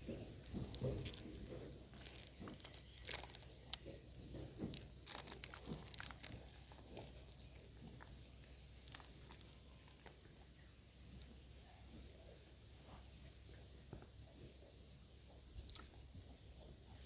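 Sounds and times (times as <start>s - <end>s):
wrapper crinkling and tearing: 0.4s - 3.9s, 4.6s - 10.2s.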